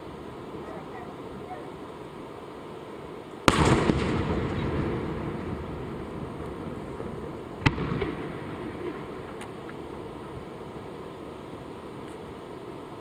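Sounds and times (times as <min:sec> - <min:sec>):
firework cracks: 0:03.4 - 0:12.4
firework shells bursting: 0:03.4 - 0:12.4
rumbling echo: 0:03.5 - 0:11.5.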